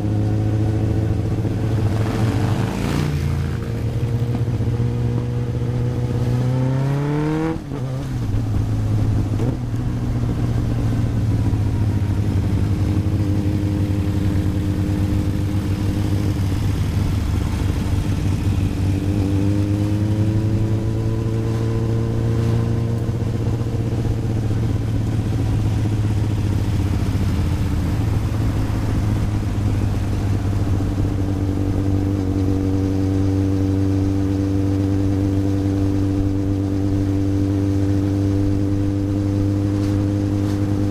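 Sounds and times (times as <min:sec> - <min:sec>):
motorcycle engine revving: 0:00.0 - 0:40.9.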